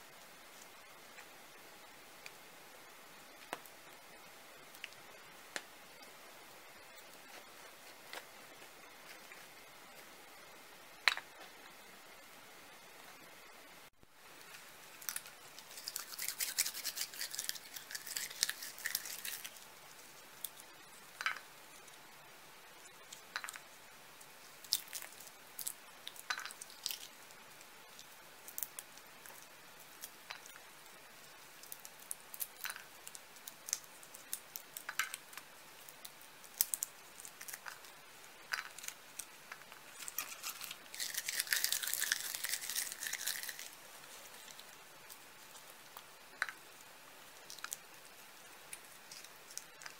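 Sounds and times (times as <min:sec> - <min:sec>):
acorn shells scraping and breaking: 0:38.5 - 0:43.8.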